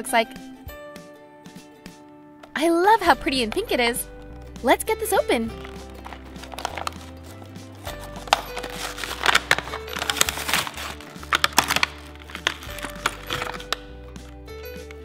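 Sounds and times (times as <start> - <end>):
light background music: 0.0 - 15.0
packaging crinkling and tearing: 5.5 - 15.0.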